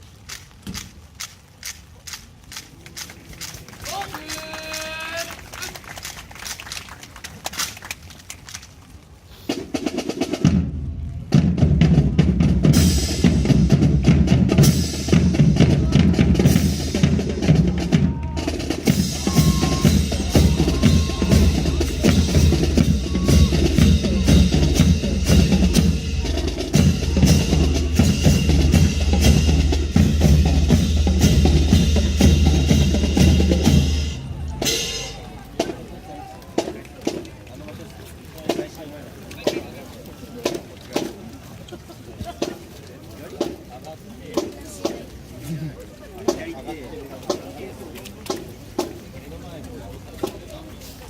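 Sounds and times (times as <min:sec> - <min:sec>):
marching snare and bass drums: 0:09.4 - 0:37.4, 0:38.4 - 0:51.0.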